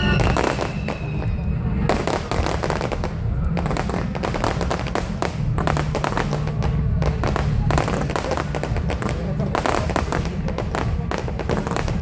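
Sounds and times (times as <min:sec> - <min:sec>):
fireworks crackling: 0:00.0 - 0:12.0
steady low rumble: 0:00.0 - 0:12.0.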